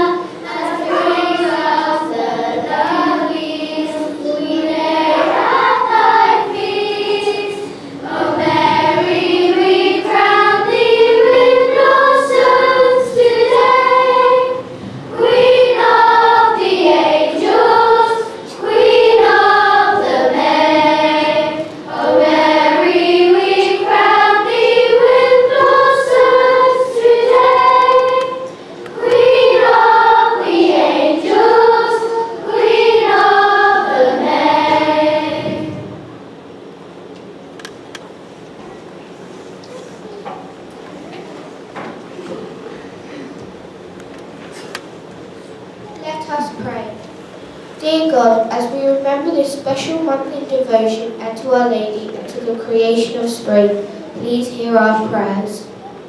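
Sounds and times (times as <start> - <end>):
children singing together: 0.0 - 36.2.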